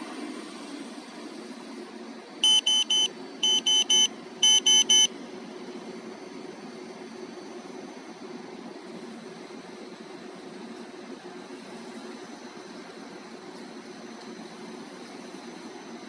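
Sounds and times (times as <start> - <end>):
car alarm high beeps: 2.4 - 5.1.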